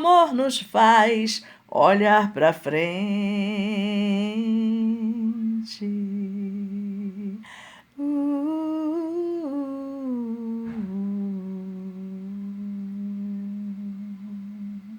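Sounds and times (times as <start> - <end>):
breath: 1.4 - 1.7, 7.4 - 7.9
person humming a slow melody: 4.3 - 14.9.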